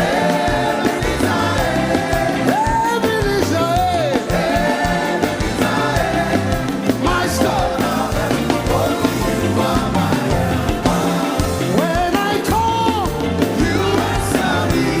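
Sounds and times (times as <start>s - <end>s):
drums and bass beat: 0.0s - 15.0s
live gospel worship music: 0.0s - 15.0s
singing: 0.0s - 15.0s.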